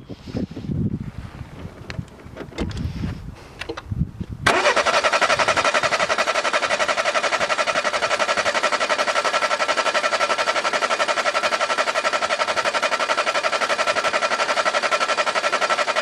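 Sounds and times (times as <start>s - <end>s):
starter motor cranking engine: 4.4s - 16.0s.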